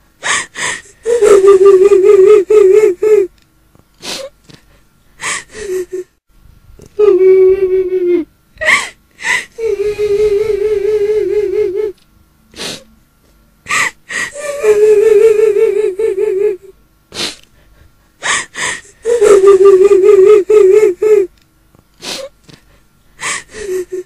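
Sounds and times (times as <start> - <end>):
woman wailing: 1.1 - 3.3, 7.0 - 8.9, 13.7 - 16.7, 19.0 - 21.3.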